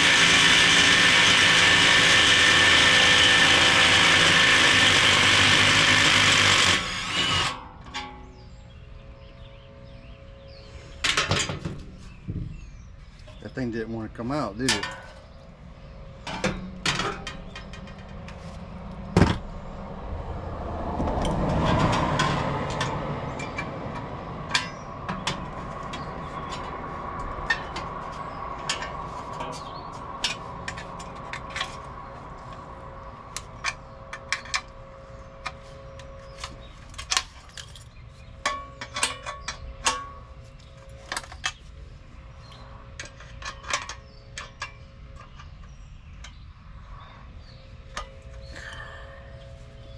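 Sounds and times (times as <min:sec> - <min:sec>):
hand tools clinking on metal: 0:14.6 - 0:15.2.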